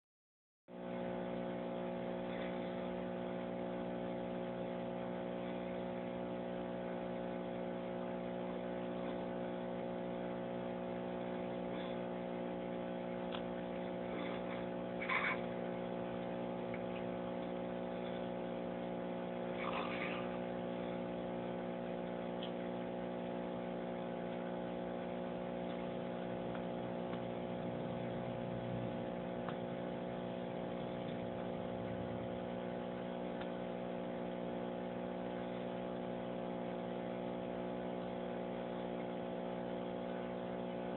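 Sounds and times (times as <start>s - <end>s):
steady machine hum: 0.7s - 40.9s.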